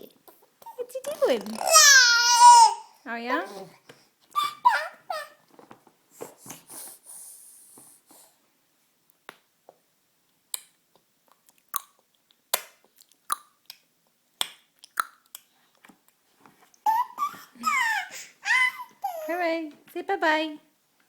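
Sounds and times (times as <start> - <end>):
baby clicking tongue: 11.3 - 13.8, 14.4 - 15.5.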